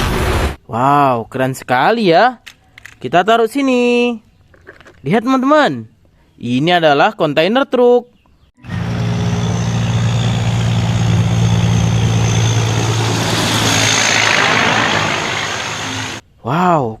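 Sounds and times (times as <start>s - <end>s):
heavy truck engine idling: 8.7s - 16.2s.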